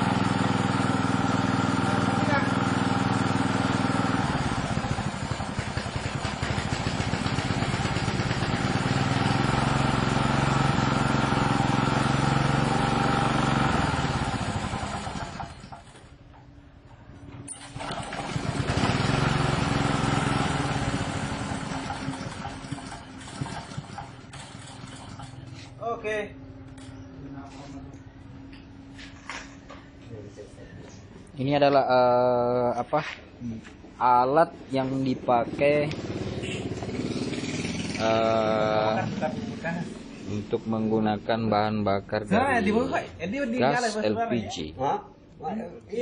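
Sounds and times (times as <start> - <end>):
small engine running: 0.0 - 16.1, 17.5 - 25.7, 35.4 - 40.5.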